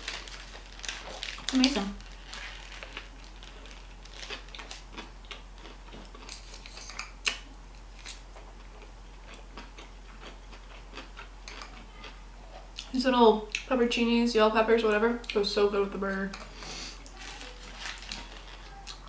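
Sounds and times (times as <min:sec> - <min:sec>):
chewing with mouth smacks: 0:04.1 - 0:12.9.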